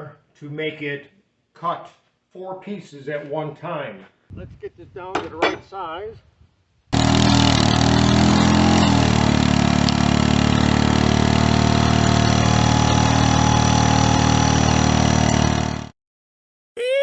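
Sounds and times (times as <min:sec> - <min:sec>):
small engine running: 0:07.0 - 0:15.9.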